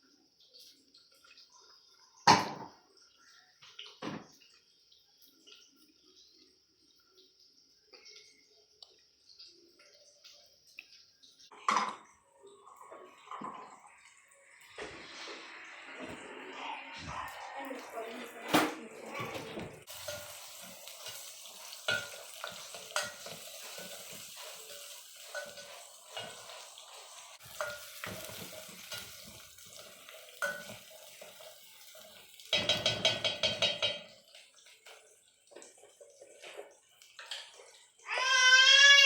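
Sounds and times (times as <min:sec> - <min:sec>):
faint sizzle: 0:00.0 - 0:39.0
metal spoon stirring in pot: 0:19.8 - 0:37.9.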